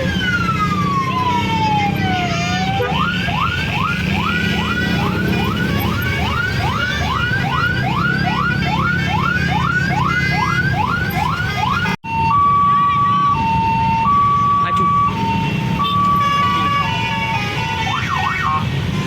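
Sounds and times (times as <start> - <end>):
engines rumbling: 0.0 - 19.0
bus horn whooping: 15.6 - 18.5.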